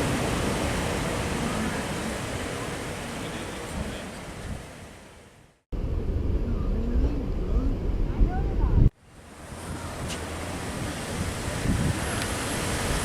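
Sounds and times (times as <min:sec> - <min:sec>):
wind on microphone: 0:05.8 - 0:13.0.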